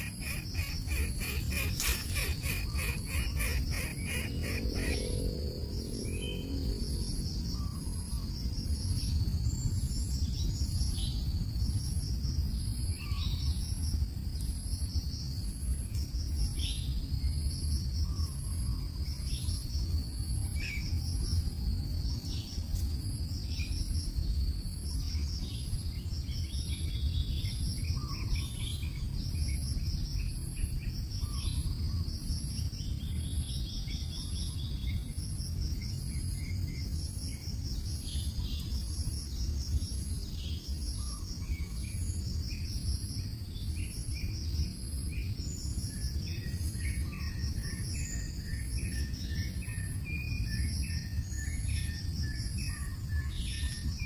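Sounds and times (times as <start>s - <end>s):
bird chirps: 0.0s - 5.2s
insect high trill: 0.0s - 5.2s
insect high chirp: 0.0s - 54.0s.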